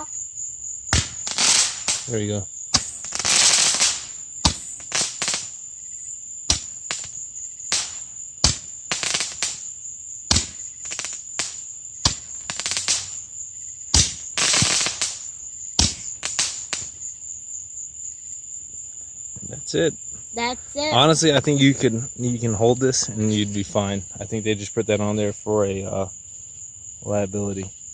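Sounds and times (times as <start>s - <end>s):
crickets chirping: 0.0s - 27.9s
roman candle pops: 0.9s - 2.2s, 2.8s - 5.5s, 6.5s - 9.7s, 10.3s - 13.2s, 14.0s - 16.9s
crackle of bursting stars: 0.9s - 5.6s, 6.5s - 13.3s, 13.9s - 17.0s.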